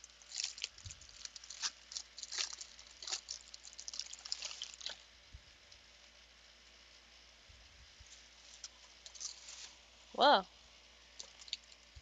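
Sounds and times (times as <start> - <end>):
plastic bag crinkling: 0.0 - 5.0.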